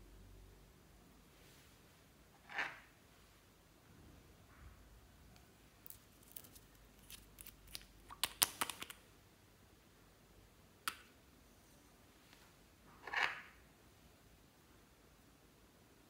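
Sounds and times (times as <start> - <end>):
slime clicking and popping: 7.1 - 9.0.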